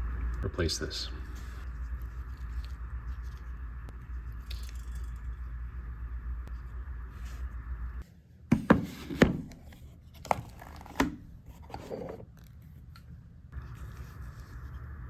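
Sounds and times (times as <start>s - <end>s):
background hum: 0.0s - 15.0s.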